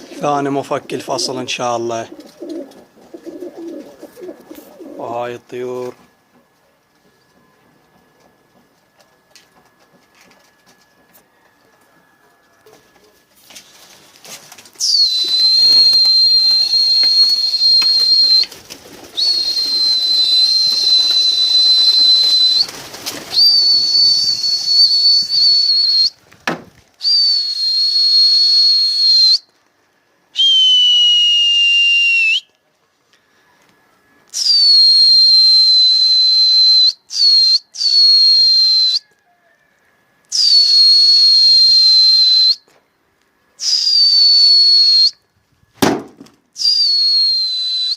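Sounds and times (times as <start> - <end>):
loud long whistle blasts: 14.8 - 18.5, 19.2 - 22.7, 23.3 - 26.2, 27.0 - 29.5, 30.4 - 32.5, 34.4 - 39.2, 40.3 - 42.7, 43.6 - 45.2, 46.6 - 47.9.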